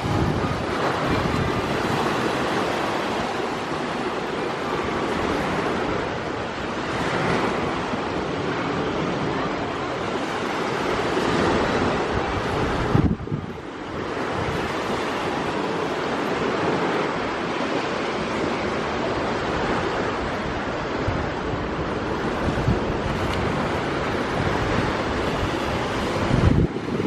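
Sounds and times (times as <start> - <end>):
sea surf washing in: 0.0 - 27.0
wind on microphone: 0.0 - 27.0
wind thump on microphone: 22.4 - 27.0.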